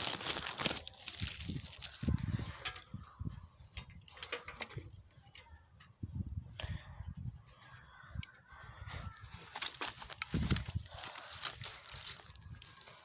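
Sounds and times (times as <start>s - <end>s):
fire crackling: 0.0s - 2.8s.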